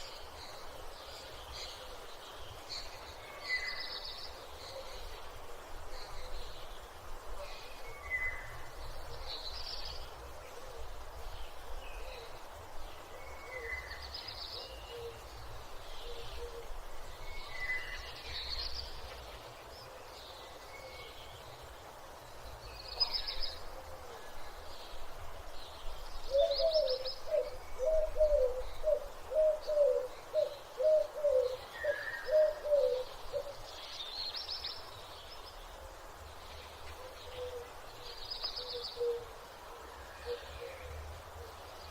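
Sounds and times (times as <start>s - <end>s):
small birds chirping: 0.0s - 41.9s.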